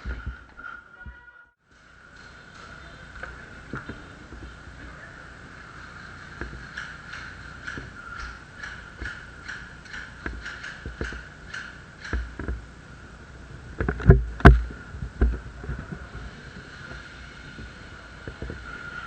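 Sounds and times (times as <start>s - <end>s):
soft rhythmic thuds: 2.5s - 12.7s, 13.8s - 16.1s
loud sharp knocks: 6.4s - 12.6s.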